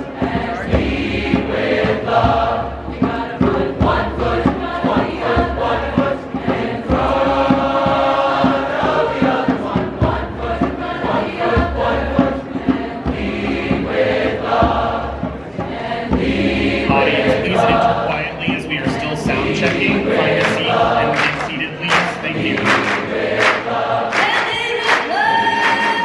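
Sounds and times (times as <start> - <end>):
choir singing: 0.0 - 26.0
short sharp percussive strikes: 16.9 - 25.0.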